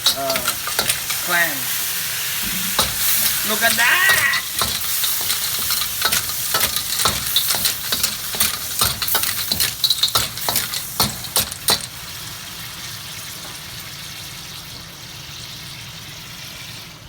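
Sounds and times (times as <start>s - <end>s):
shells and utensil clinking on pan: 0.0s - 1.7s, 2.4s - 12.0s
clams sizzling in a pan: 0.0s - 17.0s.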